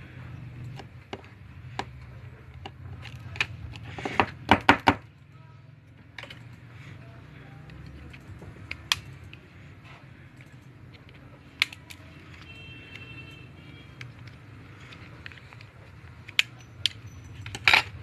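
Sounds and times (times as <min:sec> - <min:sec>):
clicks and taps of tools: 0:00.6 - 0:05.0, 0:07.6 - 0:09.4, 0:10.4 - 0:13.1, 0:13.9 - 0:18.0.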